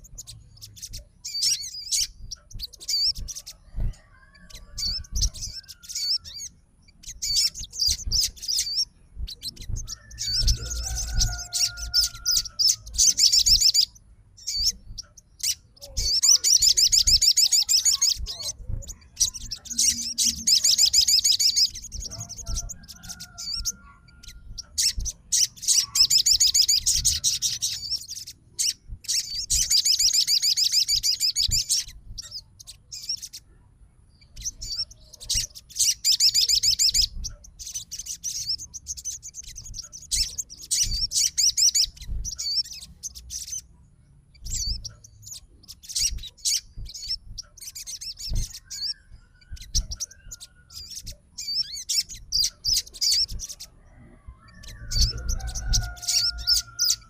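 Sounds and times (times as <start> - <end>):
sunbird trilling chirps: 0.0 - 57.0
soft low thumps: 2.1 - 16.2, 18.2 - 20.5, 21.6 - 25.4, 26.8 - 29.7, 30.9 - 33.4, 37.0 - 55.8.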